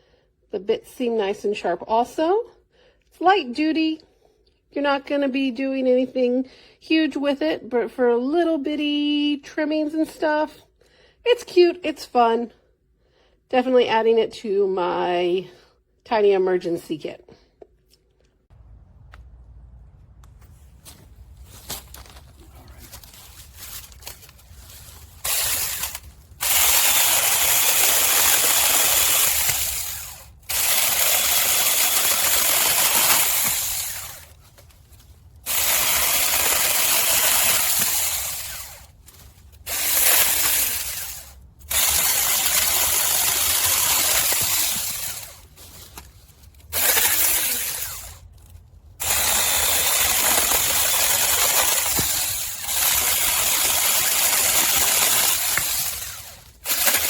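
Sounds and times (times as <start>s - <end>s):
electric chainsaw running in bursts: 25.0s - 34.4s, 35.4s - 38.9s, 39.6s - 45.5s, 46.7s - 48.2s, 49.0s - 57.0s.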